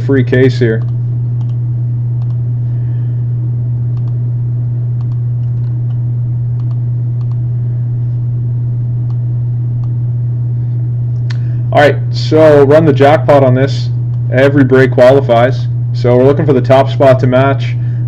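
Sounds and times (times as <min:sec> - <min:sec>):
steady low hum: 0:00.0 - 0:18.0
keyboard and mouse clicks: 0:05.0 - 0:06.0, 0:06.6 - 0:07.4.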